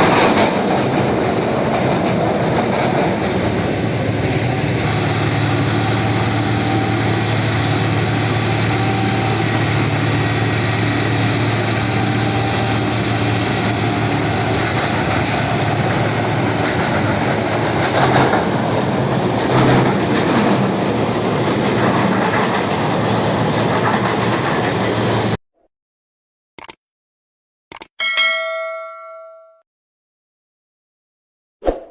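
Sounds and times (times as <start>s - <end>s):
train engine humming: 0.0s - 25.4s
wheel and machinery noise: 0.0s - 25.4s
short clicks: 26.6s - 26.8s, 27.7s - 27.9s
ringing chime: 28.0s - 29.6s.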